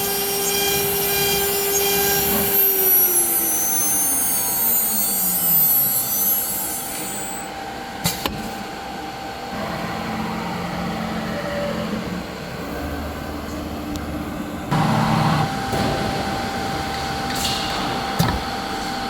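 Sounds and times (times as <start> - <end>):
router spindle whine winding down: 0.0 - 7.6.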